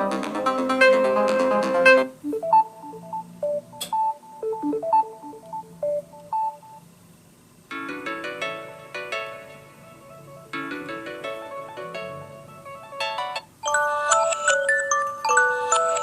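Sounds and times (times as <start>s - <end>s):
phone ringtone melody: 0.0s - 6.9s, 13.0s - 16.0s
short electronic notes: 0.0s - 6.9s.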